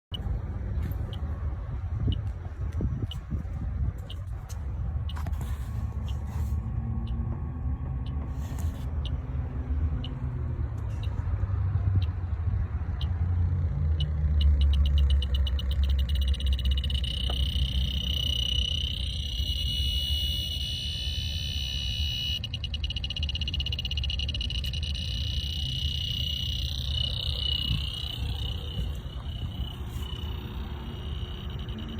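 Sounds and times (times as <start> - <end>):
steady low rumble: 0.1 - 13.3, 15.2 - 31.9
leak detector ticking: 0.9 - 11.3, 11.9 - 31.9
high alarm tone: 14.0 - 31.9.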